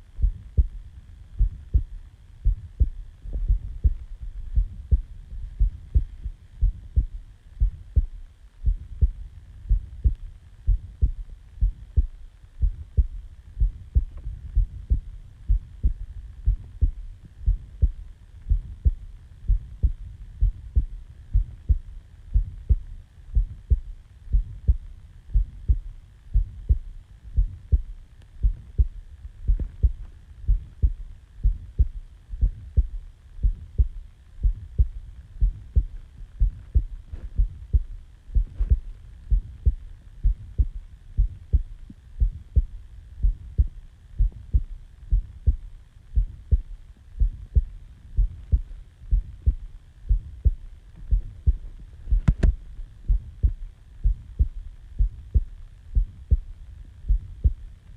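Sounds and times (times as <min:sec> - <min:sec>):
heartbeat thumps: 0:00.0 - 0:57.7.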